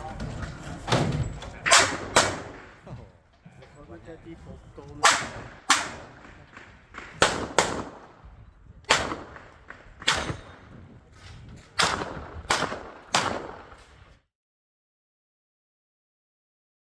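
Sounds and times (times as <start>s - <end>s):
pistol shots: 1.6s - 2.8s, 5.0s - 8.3s, 8.9s - 10.9s, 11.7s - 13.9s.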